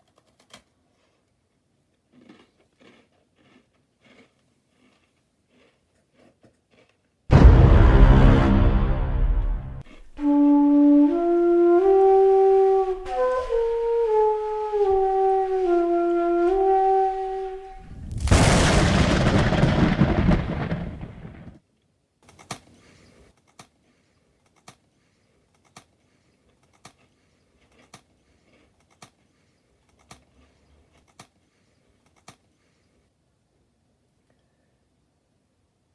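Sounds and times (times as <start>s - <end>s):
loud noisy blast: 7.3s - 10.3s, 17.6s - 21.6s
short flute-like tune: 10.2s - 17.9s.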